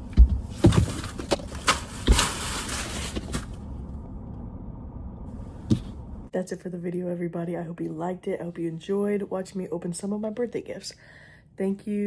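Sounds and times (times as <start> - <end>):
irregular knocks and clicks: 0.0 - 1.5
packaging rustling and crinkling: 0.4 - 3.8.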